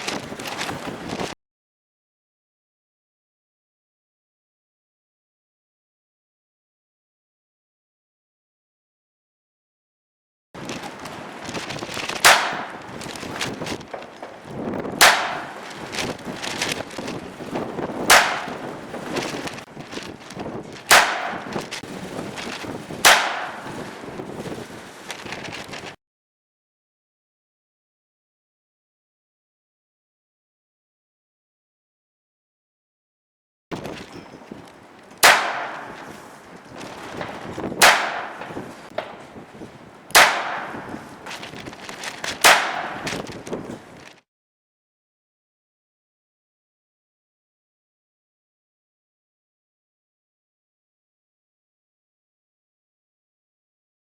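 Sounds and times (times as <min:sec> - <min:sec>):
revolver gunshots: 0:12.2 - 0:12.9, 0:15.0 - 0:15.7, 0:18.1 - 0:18.6, 0:20.9 - 0:21.6, 0:23.1 - 0:23.8, 0:35.2 - 0:36.2, 0:37.8 - 0:39.2, 0:40.2 - 0:41.2, 0:42.4 - 0:43.2.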